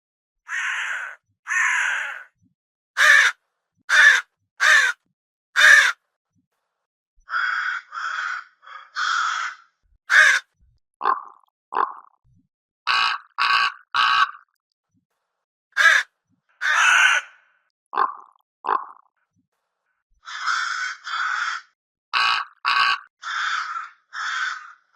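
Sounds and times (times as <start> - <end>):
crow cawing: 0.5 - 2.3, 3.0 - 5.0, 5.6 - 6.0, 7.3 - 10.5, 12.9 - 14.3, 15.8 - 17.4, 20.2 - 24.9.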